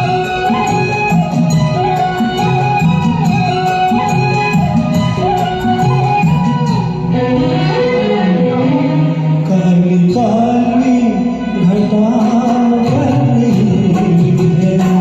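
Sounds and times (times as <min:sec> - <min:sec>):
karaoke backing track: 0:00.0 - 0:15.0
man singing: 0:09.1 - 0:15.0.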